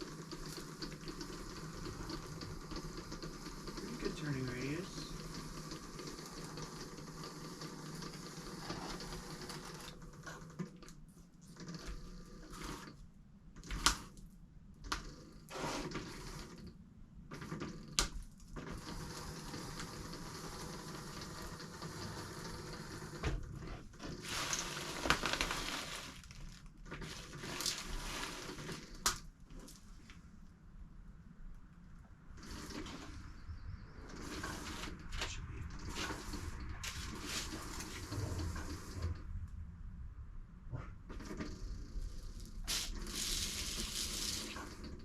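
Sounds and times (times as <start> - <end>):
wheels on ground: 0.0 - 10.6.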